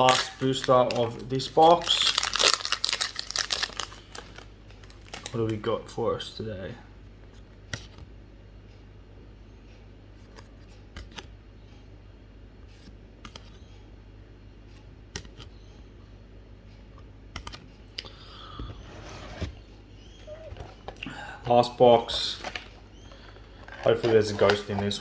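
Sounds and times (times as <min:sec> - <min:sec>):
foil pack rustling: 0:00.0 - 0:05.6, 0:22.0 - 0:25.0
low steady hum: 0:00.0 - 0:25.0
cards clicking and tapping: 0:10.2 - 0:11.3, 0:12.8 - 0:13.7, 0:15.1 - 0:15.5, 0:17.3 - 0:18.1, 0:22.1 - 0:25.0.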